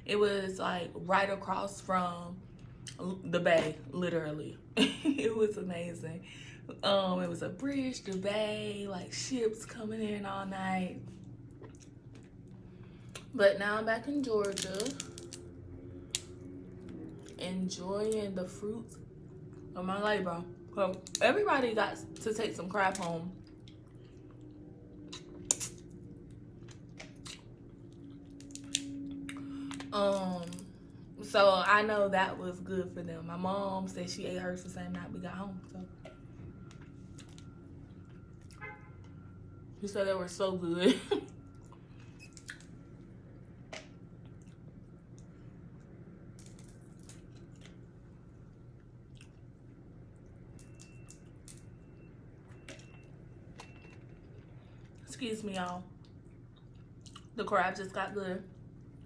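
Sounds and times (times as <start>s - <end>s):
faint low hum: 0.0s - 59.0s
chewing: 11.1s - 13.3s, 22.9s - 30.7s, 35.7s - 39.2s, 41.5s - 55.1s, 55.9s - 57.4s
crab shell cracking: 14.4s - 15.5s, 28.1s - 28.9s.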